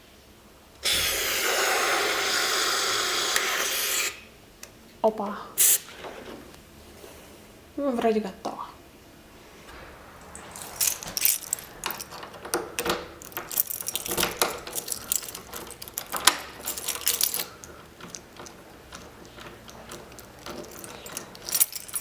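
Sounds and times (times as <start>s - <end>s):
lock clicking and scraping: 9.6s - 22.0s
keys jangling: 10.3s - 22.0s.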